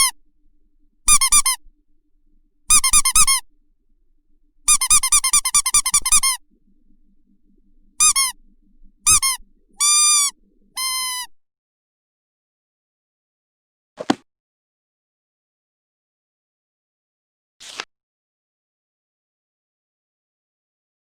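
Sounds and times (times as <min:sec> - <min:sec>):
high-pitched squeaks: 0:01.1 - 0:01.6, 0:02.7 - 0:03.4, 0:04.7 - 0:06.4, 0:08.0 - 0:08.4, 0:09.1 - 0:11.3.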